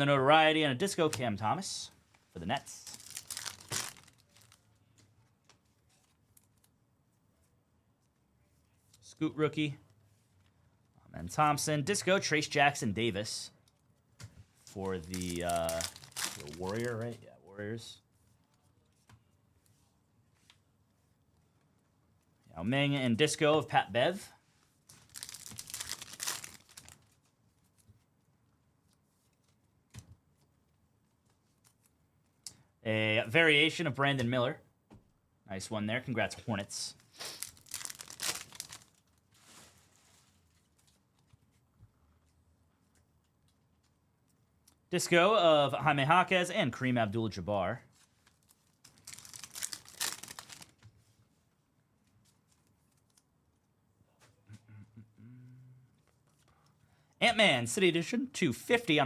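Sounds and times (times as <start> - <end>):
trading cards rustling: 2.8 - 4.6, 14.6 - 17.2, 24.9 - 27.3, 36.6 - 39.8, 48.0 - 50.8
foil pack being torn open: 2.9 - 4.6, 15.1 - 17.0, 25.1 - 27.0, 37.2 - 39.0, 48.8 - 50.7.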